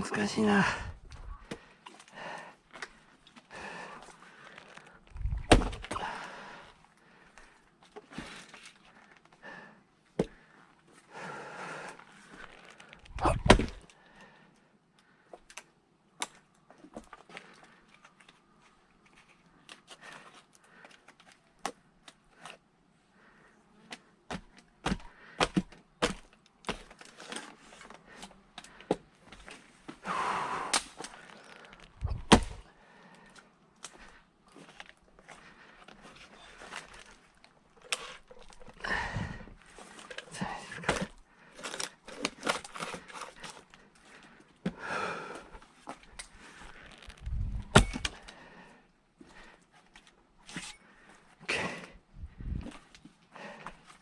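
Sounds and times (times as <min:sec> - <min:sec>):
knocks and cracks of wood: 0:04.4 - 0:06.1, 0:12.4 - 0:14.0, 0:23.9 - 0:30.0, 0:30.7 - 0:32.6, 0:39.9 - 0:44.8, 0:45.8 - 0:48.3
heavy strikes into a log: 0:05.3 - 0:06.0, 0:13.2 - 0:13.8, 0:32.1 - 0:32.6, 0:47.6 - 0:48.2.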